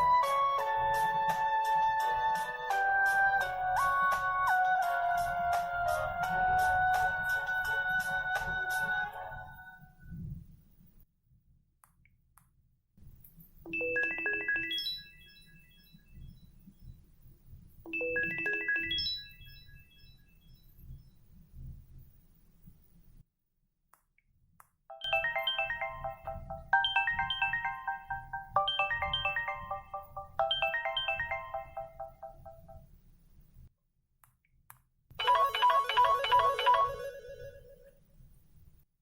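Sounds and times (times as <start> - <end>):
synthesized phone ringtone: 13.7 - 16.0, 17.9 - 20.2, 24.9 - 32.8, 35.2 - 37.8
trilling phone tone: 35.2 - 37.8.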